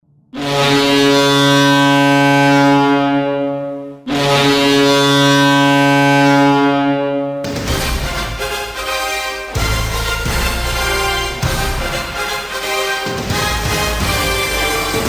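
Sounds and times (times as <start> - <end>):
arena goal horn blasts: 0.4 - 15.0.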